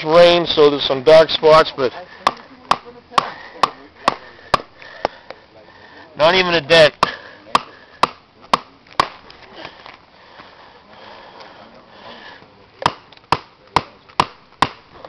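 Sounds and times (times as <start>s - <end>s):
hammer striking gravel road: 2.2s - 5.3s, 6.8s - 9.9s, 12.4s - 15.0s.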